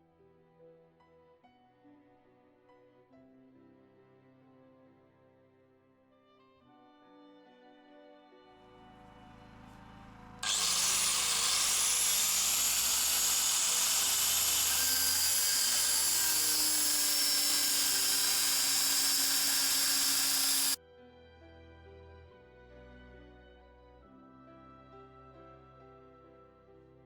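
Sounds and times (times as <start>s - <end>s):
faint background music: 0.0s - 10.4s, 20.8s - 27.0s
small motor whirring and whining: 10.4s - 20.8s.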